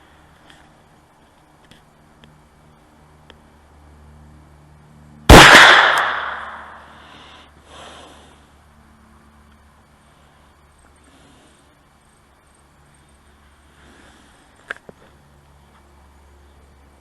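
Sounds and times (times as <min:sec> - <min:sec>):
rifle shot: 0:05.3 - 0:06.9.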